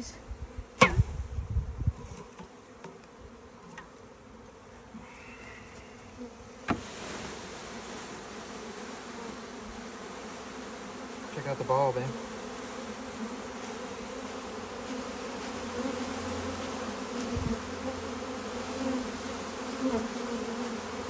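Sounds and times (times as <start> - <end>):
bees buzzing: 0.0 - 21.0
knocks on a box: 6.7 - 6.9.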